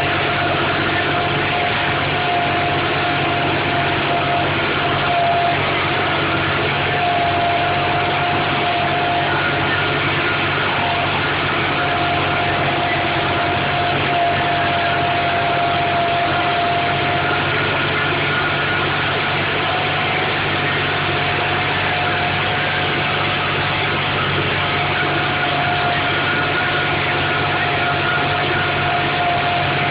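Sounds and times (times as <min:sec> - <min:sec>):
steady whine: 0:00.0 - 0:29.9
tractor engine under load: 0:00.0 - 0:29.9.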